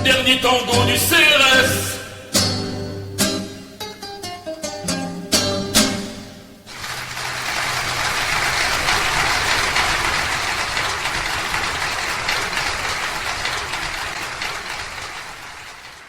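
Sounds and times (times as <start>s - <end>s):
audience applauding: 6.7s - 16.0s.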